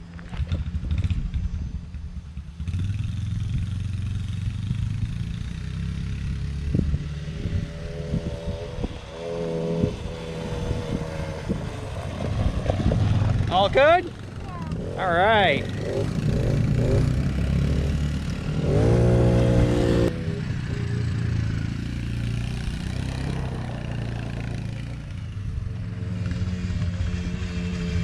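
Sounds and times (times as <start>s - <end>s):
quad bike engine running: 0.0s - 28.0s.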